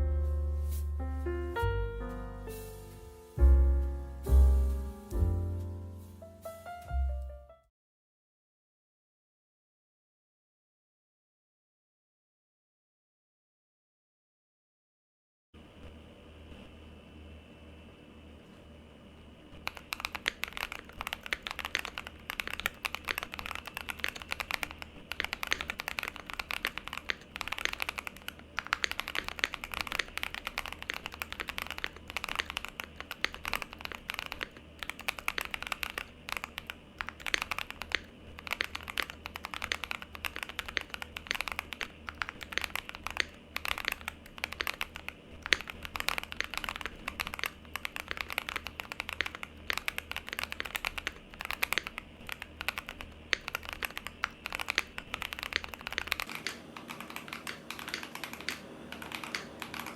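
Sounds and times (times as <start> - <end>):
fast typing on mechanical keyboard: 19.6 - 59.9.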